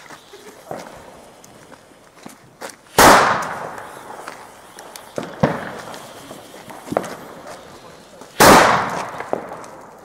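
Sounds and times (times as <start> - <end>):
faint scattered cracks: 0.0 - 10.0
firecrackers popping: 0.0 - 10.0
loud firecracker bang: 2.9 - 7.6, 8.3 - 9.9.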